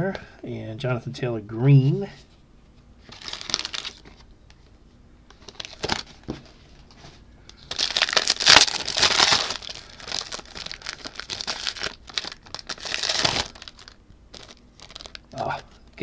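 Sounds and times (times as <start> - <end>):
plastic wrapper crinkling: 3.0 - 4.3, 5.3 - 6.6, 7.5 - 15.7.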